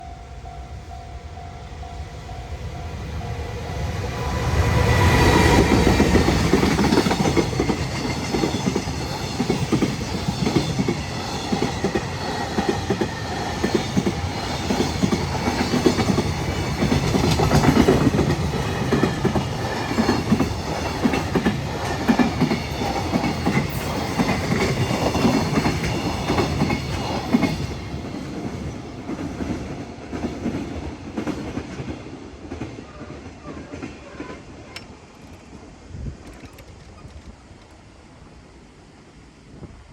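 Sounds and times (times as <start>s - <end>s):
electric locomotive passing: 0.0s - 39.9s
train wheels clacking: 4.3s - 35.5s.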